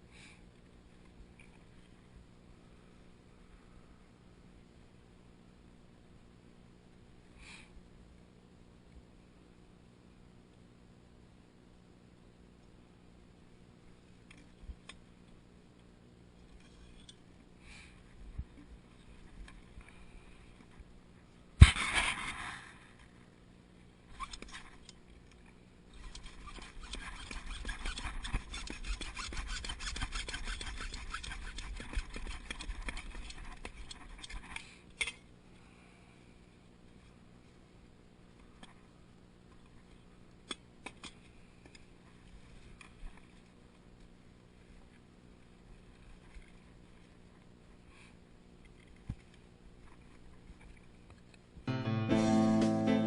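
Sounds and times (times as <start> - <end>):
saw cutting plastic pipe: 26.1 - 32.6.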